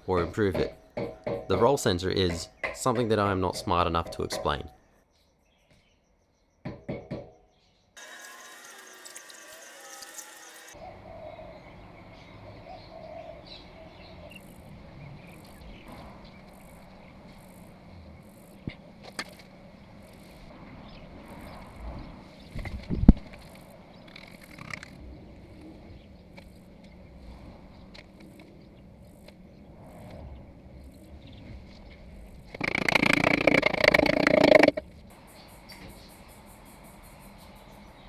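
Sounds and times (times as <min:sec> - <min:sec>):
insect chirping: 0:07.2 - 0:25.0, 0:32.2 - 0:38.0
sharp clicks: 0:32.6 - 0:34.8.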